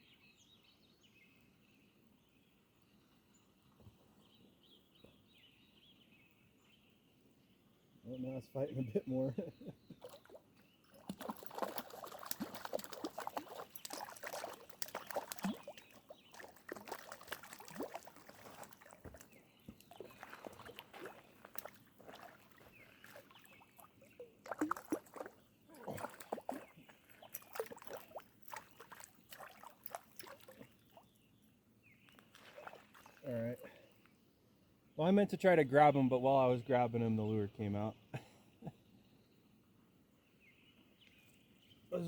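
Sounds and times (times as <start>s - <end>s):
fish splashing in water: 10.0s - 30.8s, 32.3s - 33.2s.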